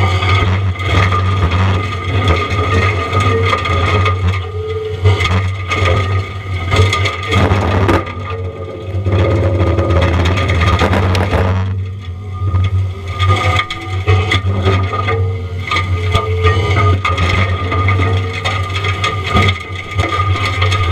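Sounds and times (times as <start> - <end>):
diesel engine drone: 0.0 - 20.9
mulcher grinding wood: 0.0 - 20.9
steady whine: 0.0 - 20.9
wood cracking and splintering: 0.0 - 20.9.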